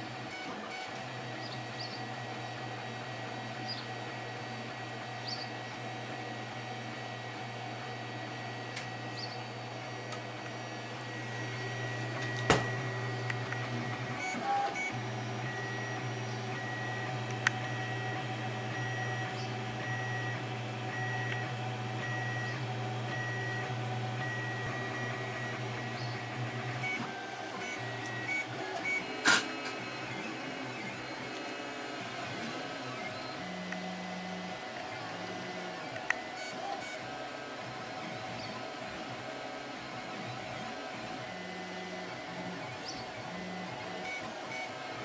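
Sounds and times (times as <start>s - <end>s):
stepper motors whining: 8.3s - 37.0s.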